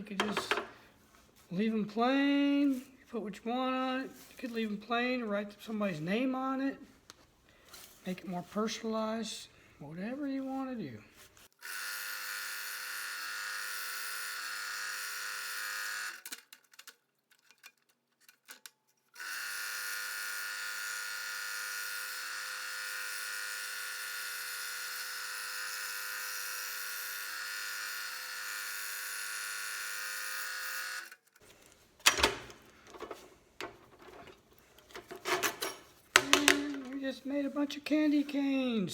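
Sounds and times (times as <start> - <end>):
sharp clicks and knocks: 0.1 - 0.8, 32.0 - 37.0
scroll saw cutting wood: 19.2 - 31.6.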